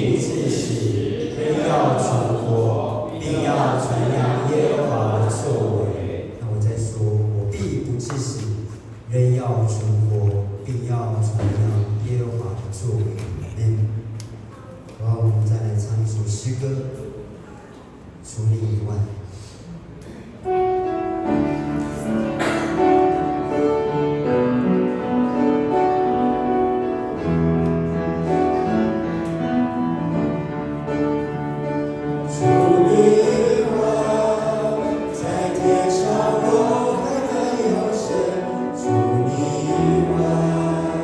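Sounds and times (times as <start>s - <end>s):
voices singing a hymn: 0.0s - 6.4s, 31.9s - 41.0s
held piano notes: 20.4s - 41.0s.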